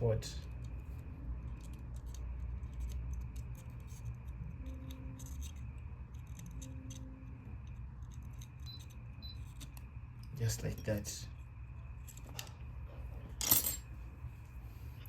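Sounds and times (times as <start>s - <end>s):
steady low hum: 0.0s - 15.0s
tweezers clicking and scraping: 0.4s - 10.3s.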